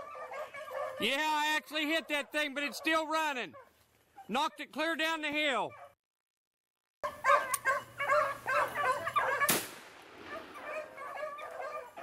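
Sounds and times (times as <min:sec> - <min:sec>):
dogs baying: 0:00.0 - 0:04.8, 0:05.7 - 0:06.0, 0:07.0 - 0:09.6, 0:10.3 - 0:12.0
sharp crack: 0:09.5 - 0:10.6.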